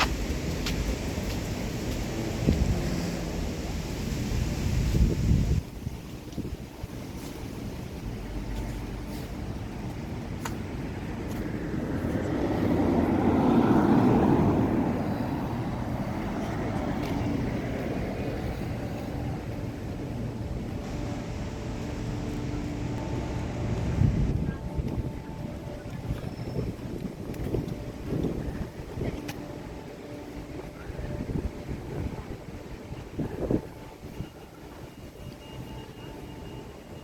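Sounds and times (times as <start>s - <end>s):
vehicle passing: 10.9s - 32.4s.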